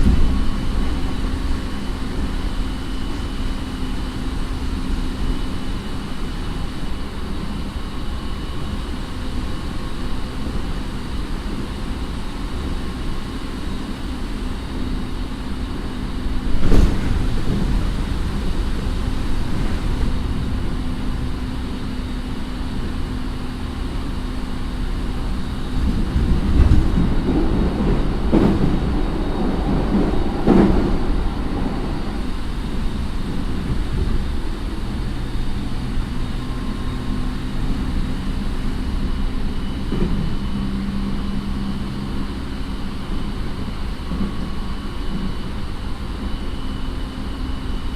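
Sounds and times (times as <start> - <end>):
heavy wheel thumps: 0.0 - 2.6, 16.4 - 22.8
train wheels rumbling on rail: 0.0 - 47.9.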